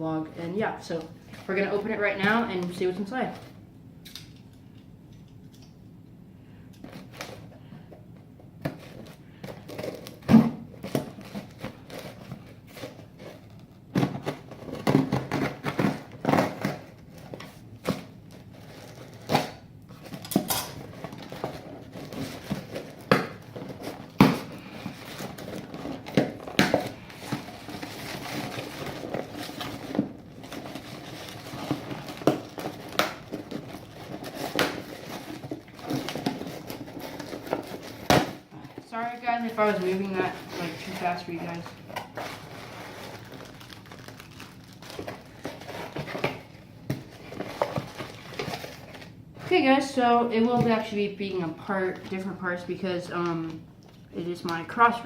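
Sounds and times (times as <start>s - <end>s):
packaging crinkling and tearing: 8.7s - 49.2s.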